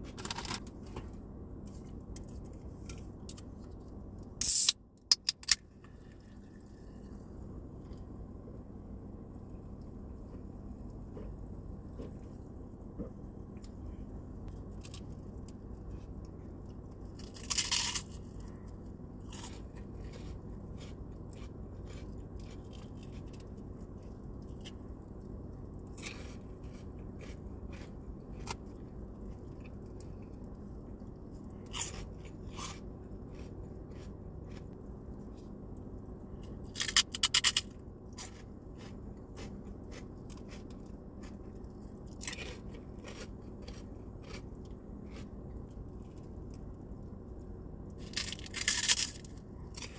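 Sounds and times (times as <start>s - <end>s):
crunching pork rinds: 0.0s - 1.1s, 14.6s - 49.9s
faint low hum: 0.0s - 49.9s
soft chewing clicks: 18.2s - 36.6s, 38.1s - 48.0s.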